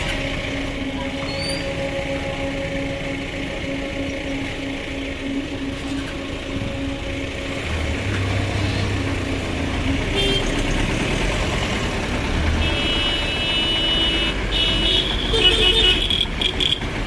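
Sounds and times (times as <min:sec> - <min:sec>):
train horn blasts: 0:00.0 - 0:09.3, 0:09.9 - 0:10.8, 0:12.3 - 0:16.9
steady low rumble: 0:00.0 - 0:12.5.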